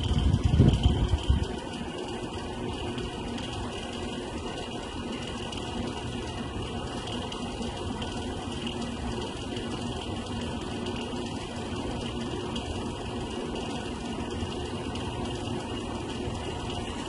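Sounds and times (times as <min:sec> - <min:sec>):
cooling fan rattling: 0:00.0 - 0:17.0
faint hum: 0:00.0 - 0:17.0.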